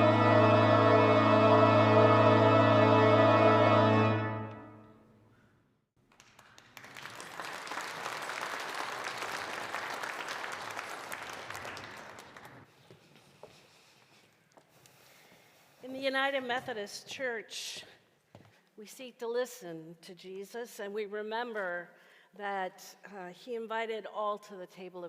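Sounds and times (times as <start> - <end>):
organ chord held: 0.0 - 4.9
congregation applauding: 6.0 - 12.7.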